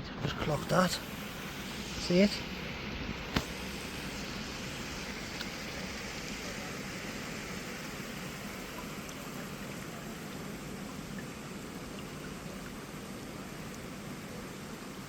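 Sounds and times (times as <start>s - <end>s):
shallow river water rushing: 0.2s - 15.0s
faint clicks: 5.3s - 5.6s.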